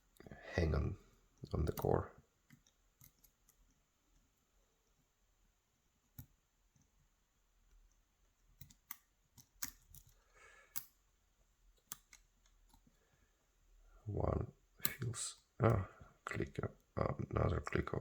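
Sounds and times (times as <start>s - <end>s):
lock pick clicking: 8.6s - 11.0s.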